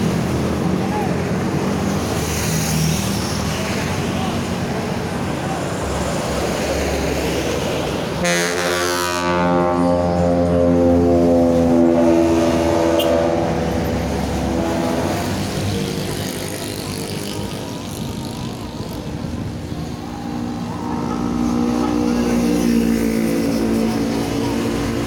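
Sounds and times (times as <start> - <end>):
traffic noise: 0.0 - 25.0
vehicle engine: 0.0 - 25.0
bus air horn blast: 8.2 - 16.0.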